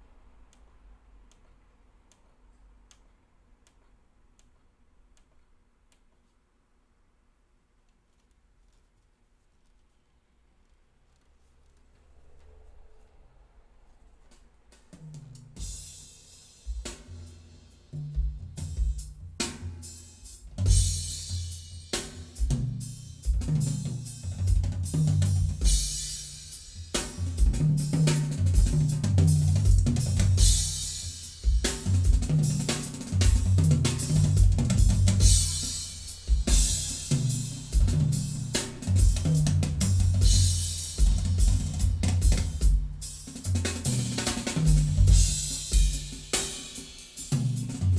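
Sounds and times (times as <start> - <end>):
drum kit playing: 14.9 - 47.9
cymbal crashes: 32.8 - 42.0
low bass notes: 33.2 - 40.6.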